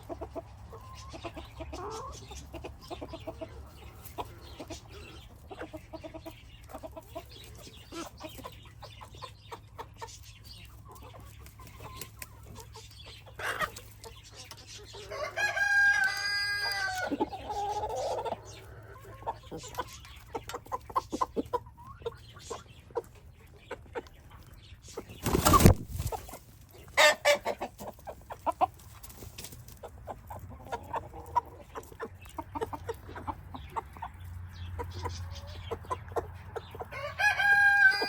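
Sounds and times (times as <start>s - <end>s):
chickens clucking softly: 0.0s - 38.0s
rooster crowing: 15.1s - 17.1s, 36.9s - 38.0s.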